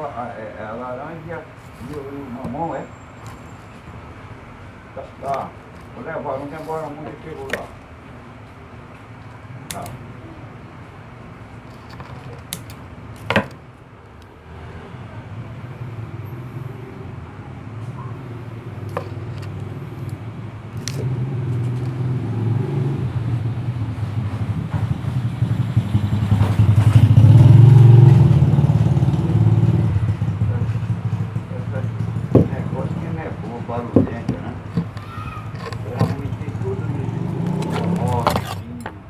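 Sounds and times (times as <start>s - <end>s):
vehicle engine passing by: 14.4s - 34.6s, 35.9s - 38.3s.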